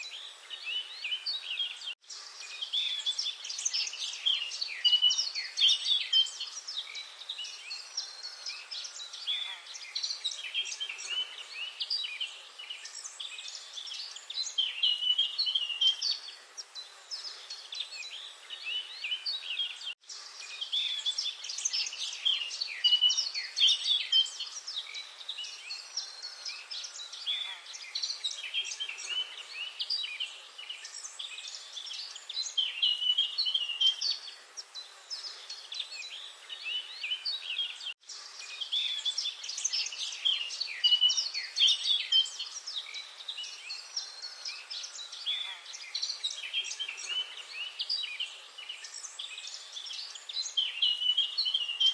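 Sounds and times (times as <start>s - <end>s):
small birds chirping and trilling: 0.0s - 51.9s.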